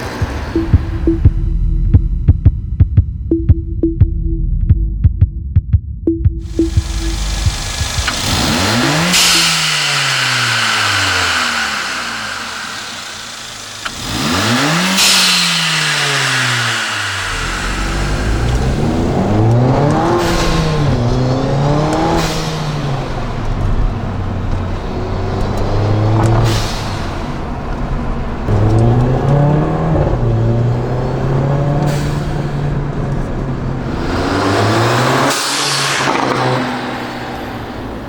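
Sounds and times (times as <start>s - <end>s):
turbocharged car engine accelerating: 0.0s - 4.8s, 6.4s - 38.0s
blow-off valve whoosh: 6.4s - 23.3s, 25.8s - 27.5s, 33.9s - 37.8s.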